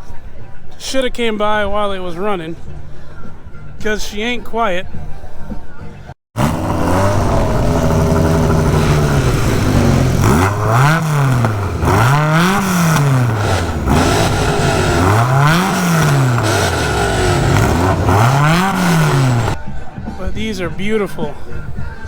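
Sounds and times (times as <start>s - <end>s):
car engine idling and revving: 6.4s - 19.6s.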